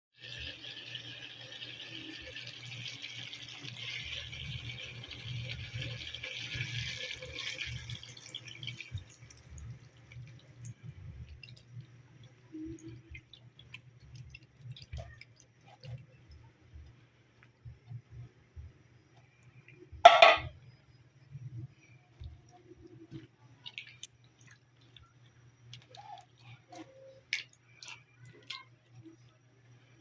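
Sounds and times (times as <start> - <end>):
water running into a sink: 0.2 - 11.8, 20.0 - 20.5.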